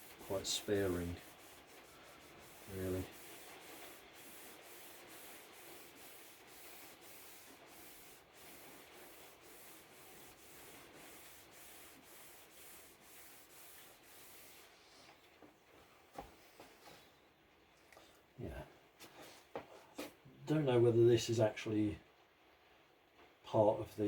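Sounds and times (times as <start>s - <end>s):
cloth rubbing on wood: 0.0s - 15.2s.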